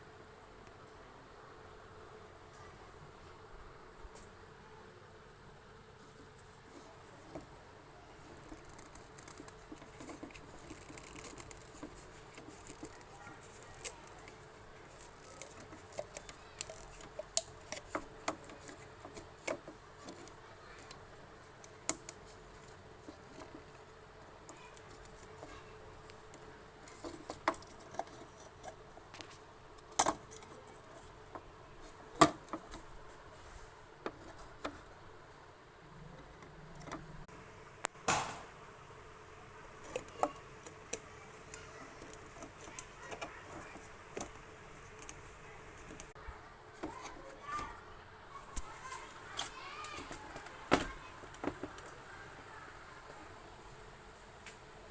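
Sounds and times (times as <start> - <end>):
faint steady hum: 0.0 - 54.9.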